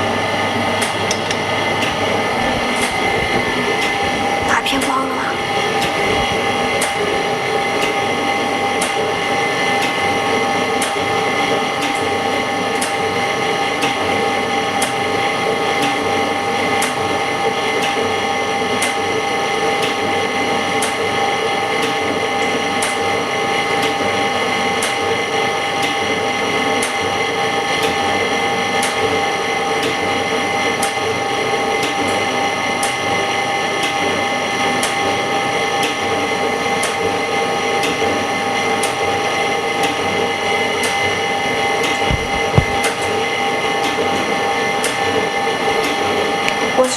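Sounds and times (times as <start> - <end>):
machine hum: 0.0 - 46.9.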